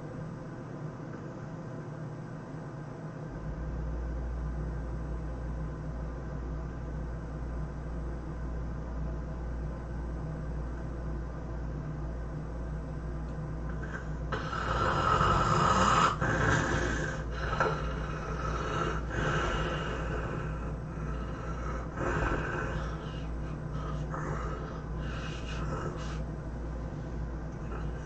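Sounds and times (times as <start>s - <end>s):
steady low hum: 0.0s - 28.0s
person snoring loudly: 13.7s - 26.2s, 27.6s - 28.0s.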